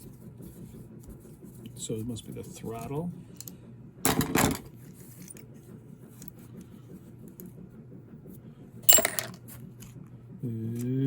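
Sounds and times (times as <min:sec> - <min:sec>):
sharp metal clatter: 0:08.9 - 0:09.4
small metal parts clicking: 0:08.9 - 0:09.4.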